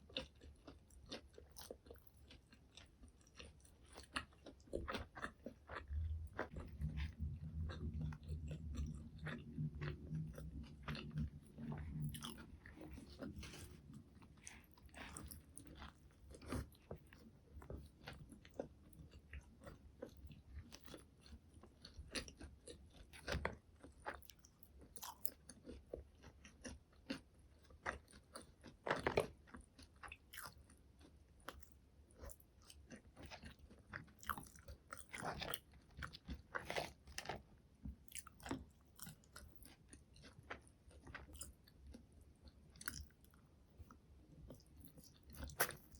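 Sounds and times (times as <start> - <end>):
chewing with crunches: 0.0 - 45.9.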